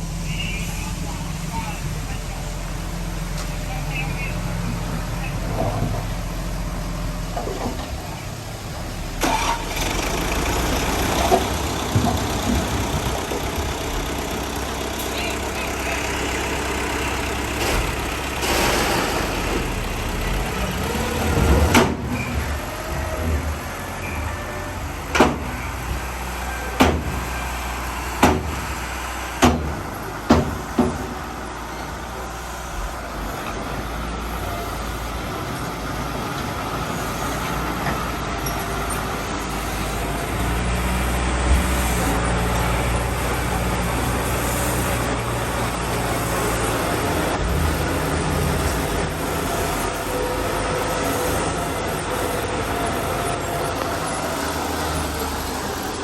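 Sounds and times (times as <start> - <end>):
diesel engine of heavy machinery: 0.0 - 56.0
sharp knocks: 28.2 - 28.7, 29.4 - 31.2.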